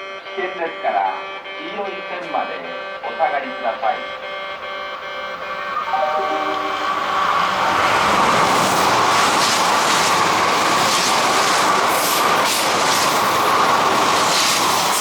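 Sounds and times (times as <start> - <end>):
train wheels rushing on rails: 5.4 - 15.0
clickety-clack: 7.9 - 15.0.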